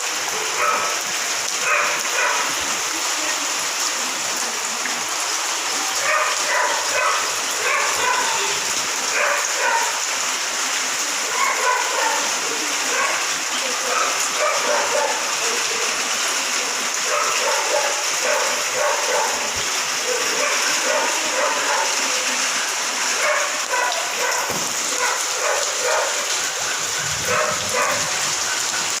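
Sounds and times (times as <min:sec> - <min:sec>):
steady rain hiss: 0:00.0 - 0:29.0
dog barking: 0:00.3 - 0:02.6, 0:06.0 - 0:10.1, 0:11.2 - 0:15.9, 0:17.0 - 0:22.4, 0:23.2 - 0:28.3.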